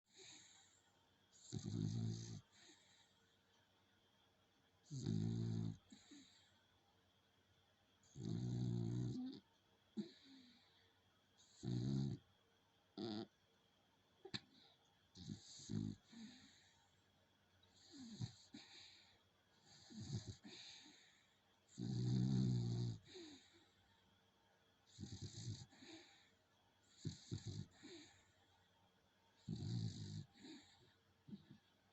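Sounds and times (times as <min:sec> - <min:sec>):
dog snoring: 0:00.1 - 0:03.0, 0:04.8 - 0:06.5, 0:08.0 - 0:10.8, 0:11.4 - 0:12.3, 0:13.0 - 0:13.3, 0:14.3 - 0:16.7, 0:17.7 - 0:23.7, 0:24.9 - 0:28.3, 0:29.4 - 0:31.7.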